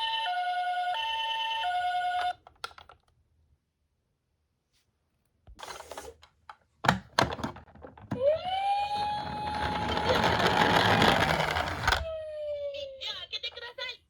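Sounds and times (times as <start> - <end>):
siren sound: 8.2 - 10.4
toy cars rattling down a slope: 9.1 - 12.0
toy cars clacking: 9.4 - 12.0.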